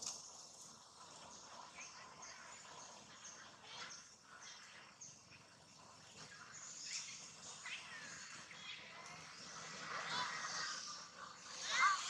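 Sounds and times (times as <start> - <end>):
noisy outdoor background: 0.0 - 12.0
animals chirping and squeaking: 0.1 - 12.0.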